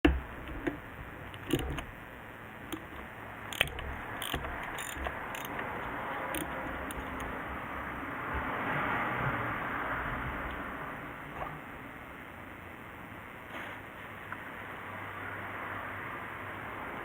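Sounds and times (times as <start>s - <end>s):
sharp mechanical clicks and clinks: 0.5s - 2.0s, 2.6s - 7.6s.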